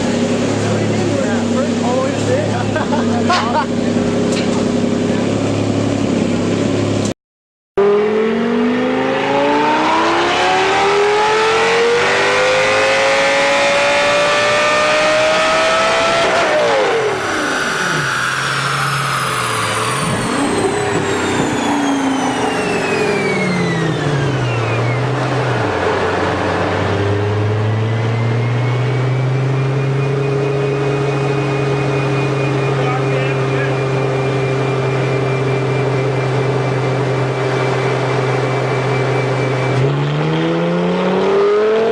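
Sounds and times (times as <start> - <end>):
car engine revving: 0.0 - 7.1, 7.8 - 41.9
high whine: 7.8 - 41.9.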